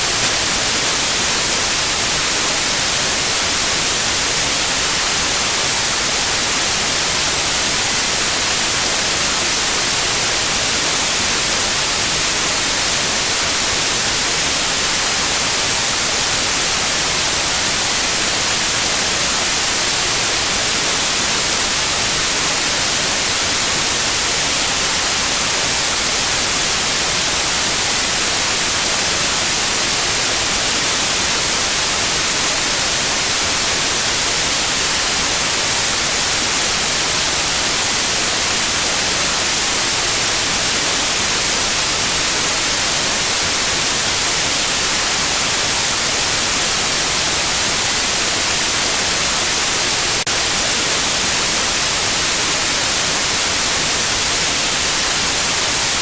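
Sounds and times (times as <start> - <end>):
white noise hissing: 0.0 - 56.0.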